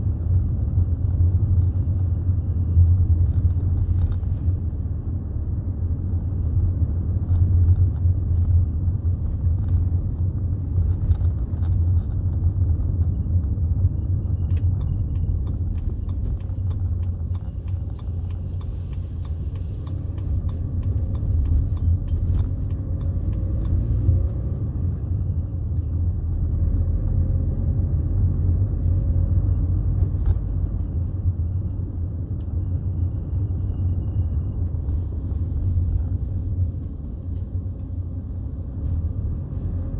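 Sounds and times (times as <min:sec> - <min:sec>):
car engine and road noise: 0:00.0 - 0:39.9
light ticks: 0:13.4 - 0:24.5.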